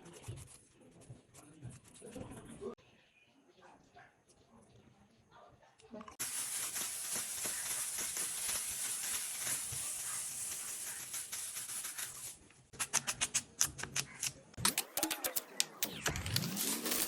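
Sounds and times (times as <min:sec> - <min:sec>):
sharp clicks and clatters: 0:06.2 - 0:17.0.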